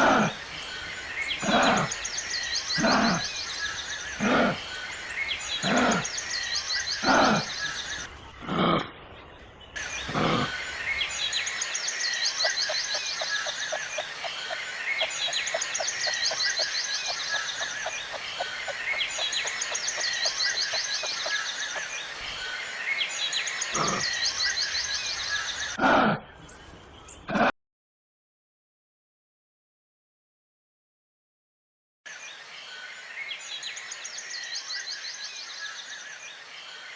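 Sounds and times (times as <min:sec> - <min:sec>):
wild animal calling loudly: 0:00.0 - 0:00.4, 0:01.4 - 0:02.0, 0:02.8 - 0:03.4, 0:04.1 - 0:04.7, 0:05.5 - 0:06.2, 0:07.0 - 0:08.9, 0:09.8 - 0:10.7, 0:23.7 - 0:24.2.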